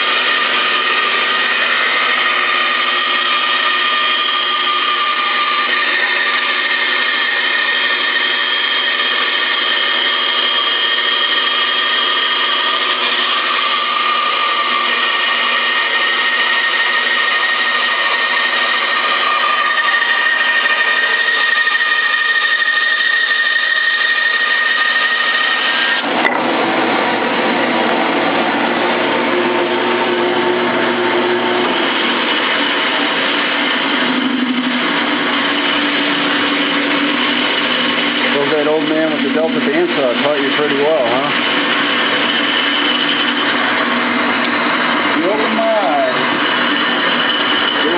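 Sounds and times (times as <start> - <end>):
bandsaw resawing wood: 0.0 - 47.9.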